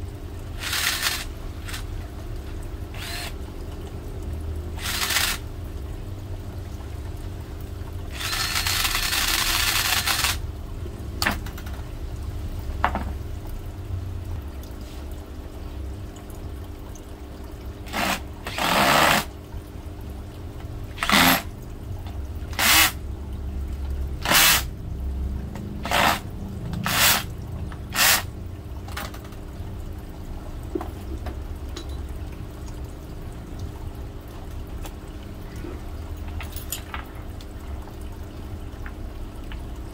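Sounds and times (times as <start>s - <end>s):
electric drill bursts: 0.6s - 1.8s, 3.0s - 3.4s, 4.8s - 5.4s, 8.1s - 10.4s, 17.9s - 19.3s, 21.0s - 21.5s, 22.6s - 23.0s, 24.2s - 24.7s, 25.8s - 26.2s, 26.8s - 27.3s, 27.9s - 28.3s.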